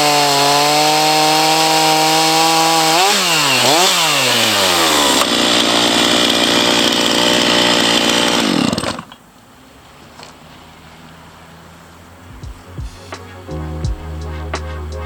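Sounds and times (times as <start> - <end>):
chainsaw cutting wood: 0.0 - 9.2.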